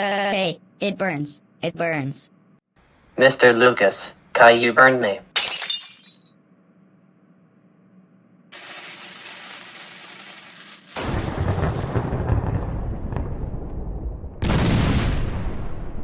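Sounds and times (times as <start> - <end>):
steady hiss: 8.6 - 11.5.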